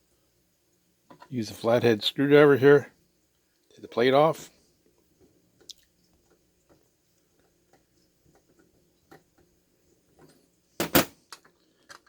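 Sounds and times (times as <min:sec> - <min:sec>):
small metal clicks: 0:11.3 - 0:12.0.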